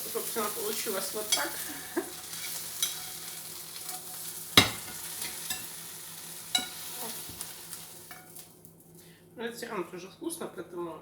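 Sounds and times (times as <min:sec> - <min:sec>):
utensils clinking against dishes: 0:01.2 - 0:05.7, 0:06.5 - 0:06.8.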